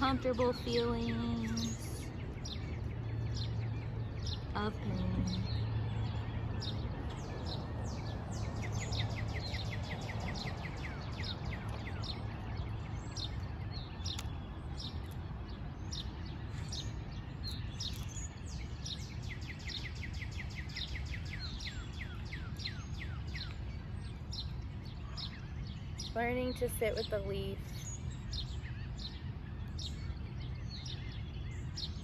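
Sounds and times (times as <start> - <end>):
low background rumble: 0.0 - 32.0
wild birds chirping: 0.0 - 32.0.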